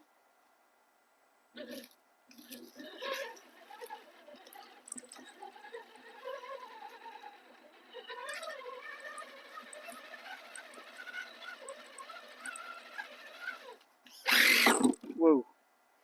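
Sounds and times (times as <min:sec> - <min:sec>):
electric motor and gears whining: 0:02.4 - 0:15.0.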